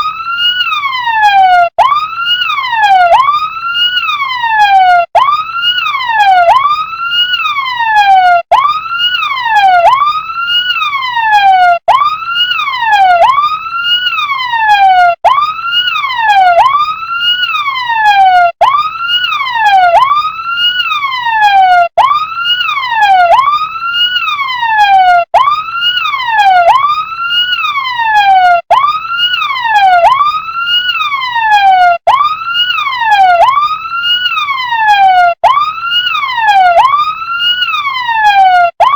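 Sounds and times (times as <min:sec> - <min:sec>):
toy fire truck electronic siren: 0:00.0 - 0:38.9.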